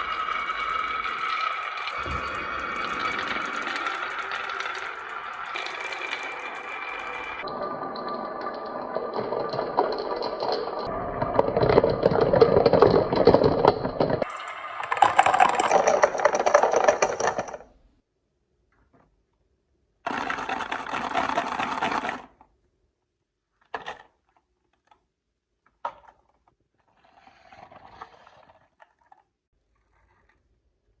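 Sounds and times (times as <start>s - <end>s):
marbles rolling on a marble run: 0.0s - 17.7s, 20.1s - 22.3s.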